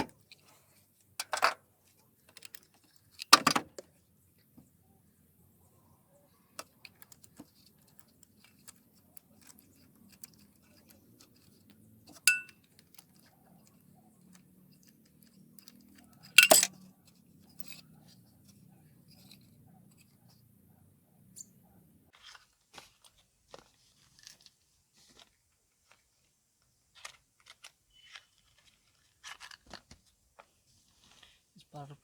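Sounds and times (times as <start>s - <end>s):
metal hand tools clinking: 12.2s - 12.6s, 15.6s - 16.8s.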